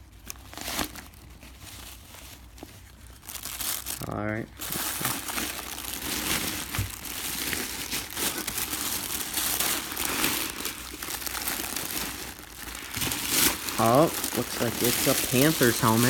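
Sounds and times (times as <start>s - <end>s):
plastic wrapping crinkling: 0.0s - 16.0s.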